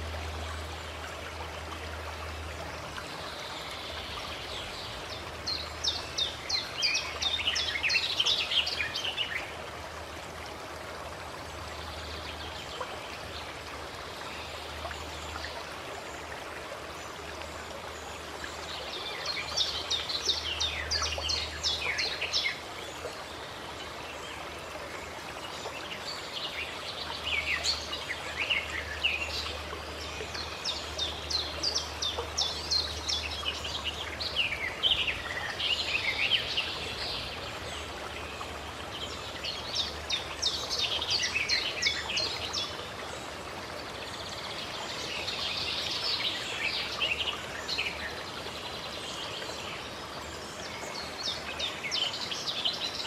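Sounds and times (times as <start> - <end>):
flowing water: 0.0 - 53.0
songbirds chirping and trilling: 17.2 - 53.0.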